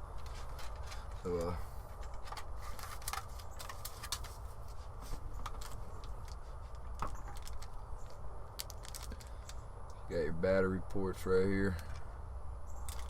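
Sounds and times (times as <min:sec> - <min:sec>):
steady low rumble: 0:04.3 - 0:13.0.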